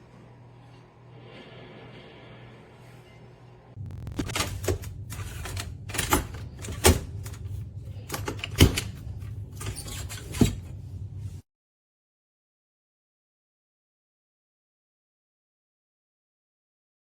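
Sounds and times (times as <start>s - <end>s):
shelf parts knocking and clattering: 4.4s - 11.2s.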